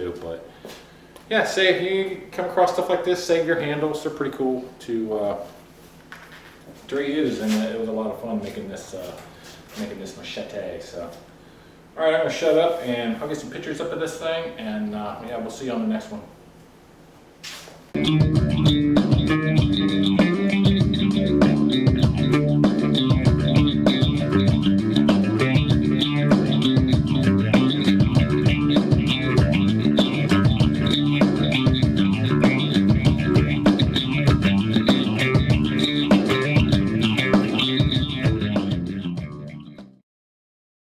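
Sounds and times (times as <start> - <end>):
guitar and bass music with beat: 18.0 - 40.0.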